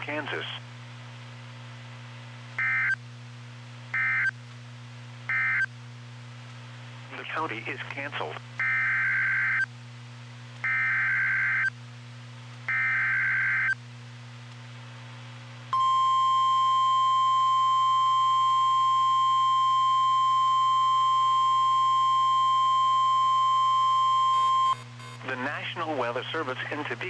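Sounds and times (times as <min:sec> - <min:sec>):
steady high alarm tone: 0:15.8 - 0:25.2.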